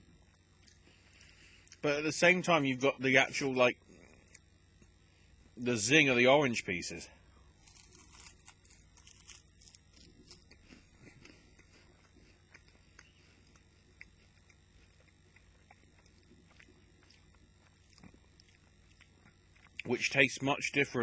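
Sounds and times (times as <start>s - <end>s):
chewing and crunching rice cake: 0.0s - 1.9s, 3.8s - 5.6s, 7.2s - 20.1s.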